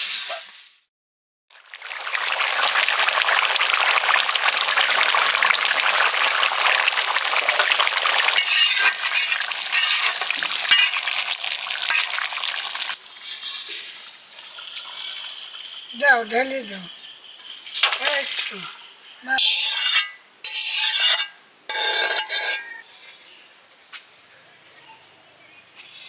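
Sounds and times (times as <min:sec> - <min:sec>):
meat sizzling in a pan: 0:01.5 - 0:19.8
spatula scraping a pan: 0:06.6 - 0:15.2, 0:18.8 - 0:22.8.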